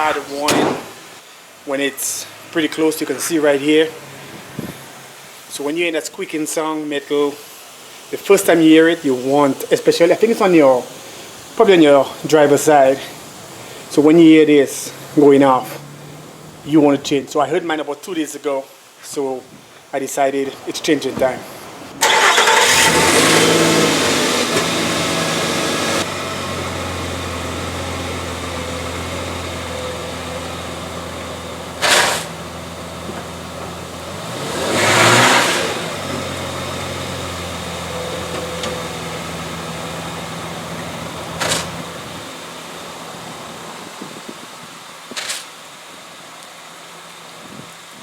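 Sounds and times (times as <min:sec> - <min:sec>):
pickup engine starting and idling: 0:11.0 - 0:17.1, 0:22.0 - 0:48.0
short rushing noise: 0:31.8 - 0:32.4.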